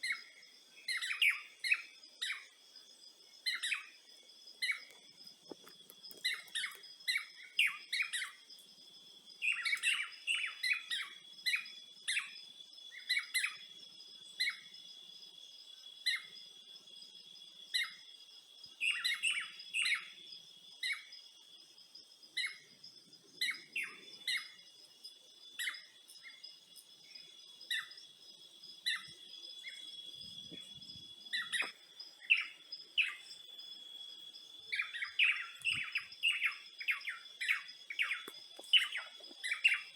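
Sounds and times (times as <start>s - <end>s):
small birds chirping: 0.0s - 39.9s
high-pitched insect drone: 22.4s - 39.9s.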